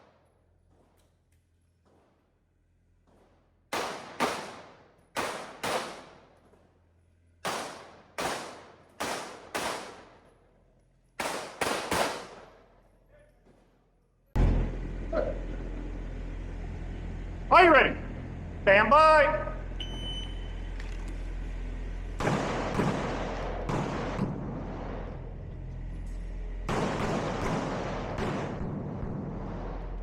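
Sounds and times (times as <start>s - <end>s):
pistol shots: 3.0s - 6.6s, 7.4s - 10.4s, 11.2s - 12.8s, 22.2s - 25.3s, 26.7s - 30.0s.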